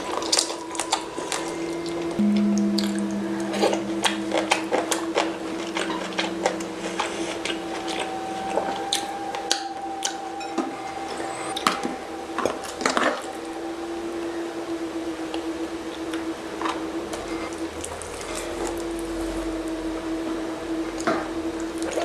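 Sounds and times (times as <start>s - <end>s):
wet squishy chewing: 0.0s - 2.2s, 4.0s - 10.2s
steady low hum: 1.5s - 22.0s.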